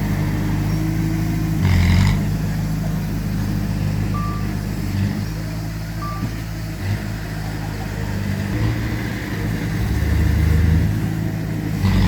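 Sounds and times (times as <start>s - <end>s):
heavy machinery diesel engines: 0.0s - 12.0s
reversing alarm beep: 4.1s - 4.6s, 6.0s - 6.4s.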